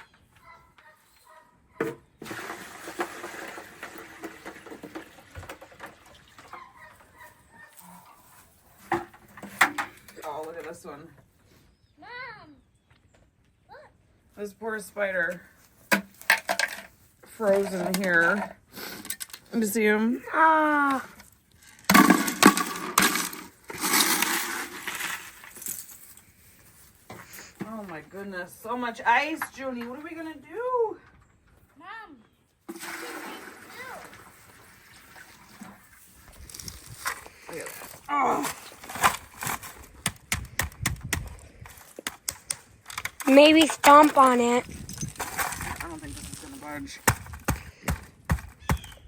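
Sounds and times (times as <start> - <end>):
water pouring splashing: 2.2 - 6.6, 32.7 - 36.0
ice crackling: 20.8 - 26.3, 41.8 - 47.9
ice pieces clinking: 43.2 - 46.6.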